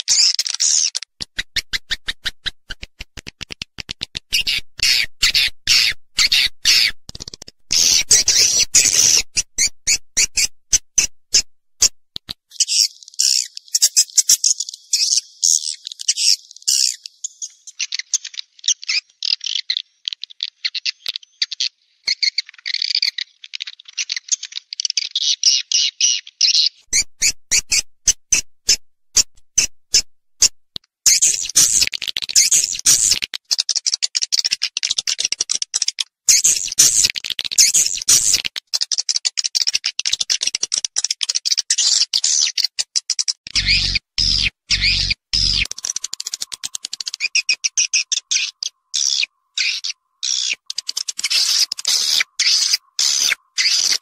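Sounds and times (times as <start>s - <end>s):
sharp clicks: 0.6s - 4.4s, 43.5s - 47.3s
swiftlet chirps and twitters: 7.7s - 10.5s, 31.1s - 33.2s, 36.3s - 38.4s, 43.5s - 54.0s.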